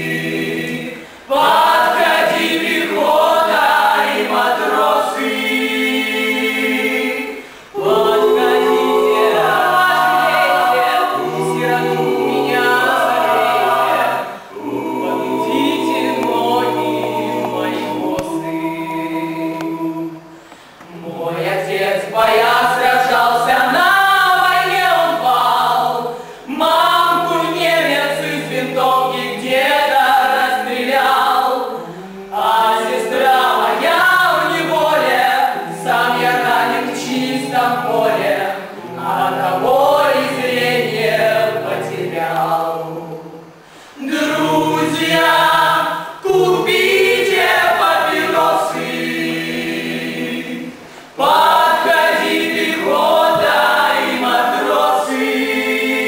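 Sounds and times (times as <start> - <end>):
choir singing: 0.0 - 56.0.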